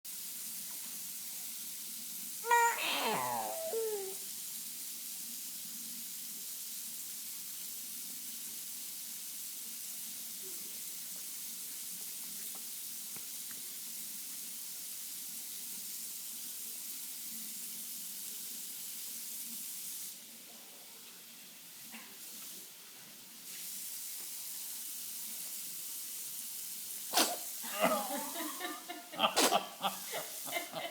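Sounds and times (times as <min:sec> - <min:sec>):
high-pitched falling cry: 0:02.4 - 0:04.2
steady hiss: 0:27.1 - 0:30.9.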